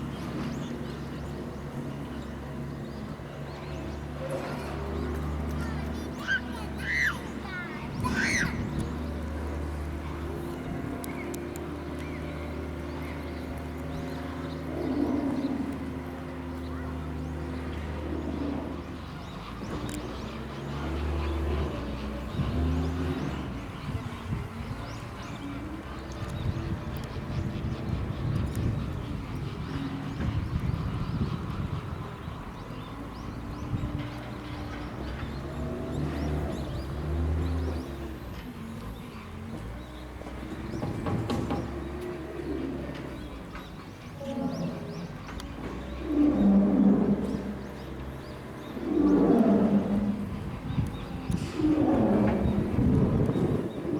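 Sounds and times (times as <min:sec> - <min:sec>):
small birds chirping: 0:00.0 - 0:53.9.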